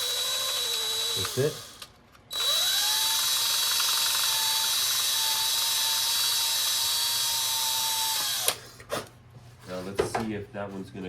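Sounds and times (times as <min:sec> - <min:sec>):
electric drill whining: 0:00.0 - 0:08.6.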